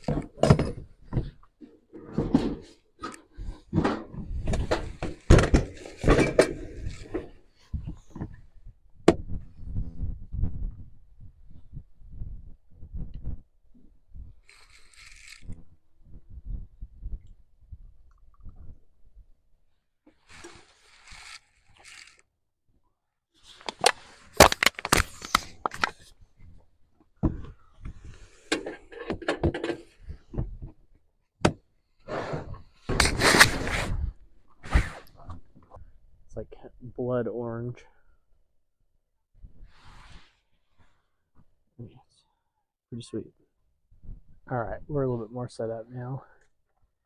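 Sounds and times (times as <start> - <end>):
rustling and shuffling: 0.0 - 19.4, 20.1 - 22.2.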